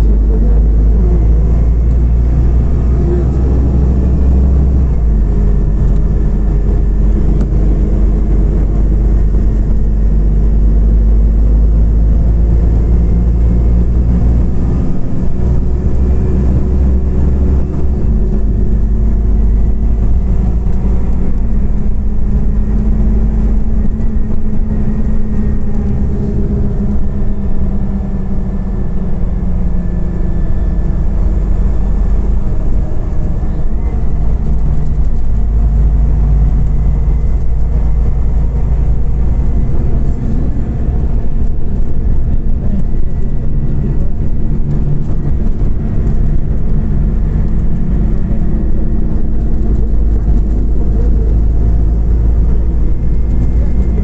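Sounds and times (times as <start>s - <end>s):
bus engine rumbling: 0.0s - 54.0s
road noise: 0.0s - 54.0s.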